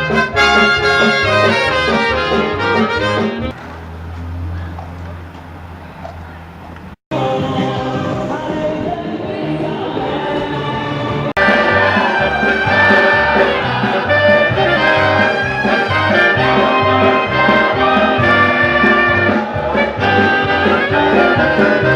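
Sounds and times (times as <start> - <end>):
upbeat brass band music: 0.0 - 3.6, 11.3 - 21.9.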